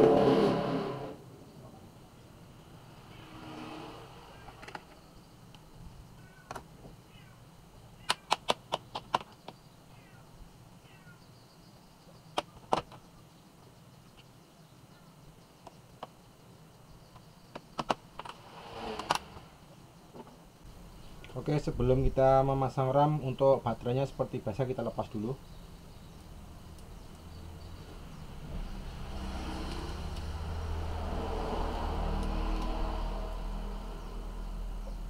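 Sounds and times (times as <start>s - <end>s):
sharp plastic clicks: 8.0s - 9.6s.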